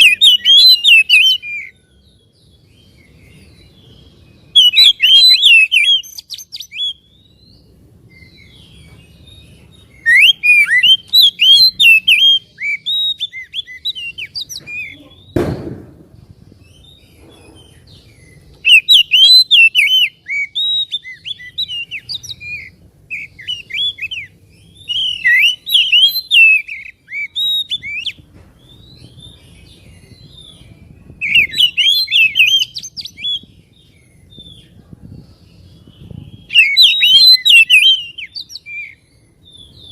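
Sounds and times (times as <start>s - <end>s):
bird whistled song: 0.0s - 39.9s
thump: 15.4s - 16.1s.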